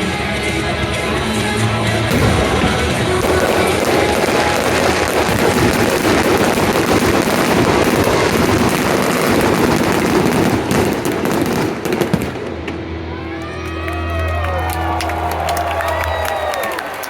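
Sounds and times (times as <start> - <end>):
fireworks crackling and popping: 2.0 - 12.8
fireworks bangs: 2.0 - 13.0.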